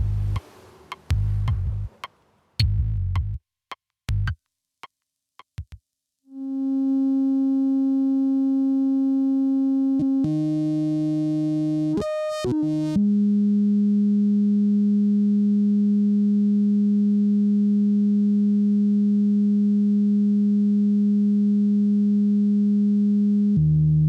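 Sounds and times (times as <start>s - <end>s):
low synthesizer percussive hits: 0.0s - 2.0s.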